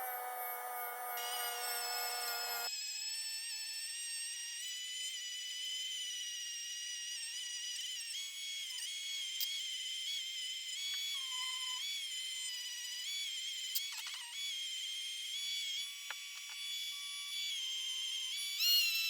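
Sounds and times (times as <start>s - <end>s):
rotary tool whining: 0.0s - 2.7s.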